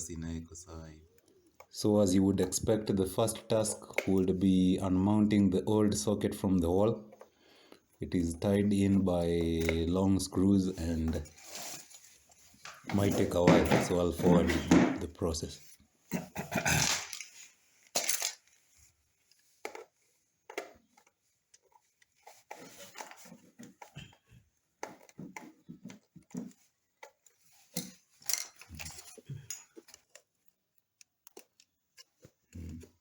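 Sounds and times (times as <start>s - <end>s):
screwdriver clicking and scraping: 24.8s - 32.5s.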